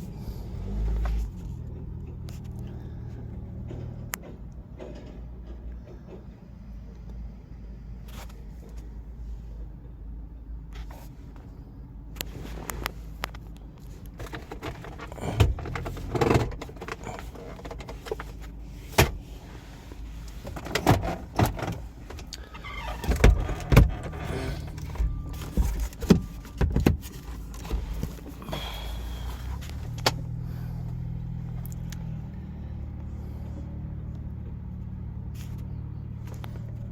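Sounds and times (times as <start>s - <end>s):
low hum: 22.1s - 26.6s.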